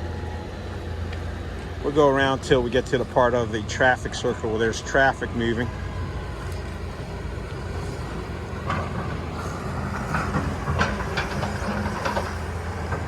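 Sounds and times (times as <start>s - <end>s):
heavy engine rumbling: 0.0s - 13.0s
knocks and clanks: 8.6s - 13.0s.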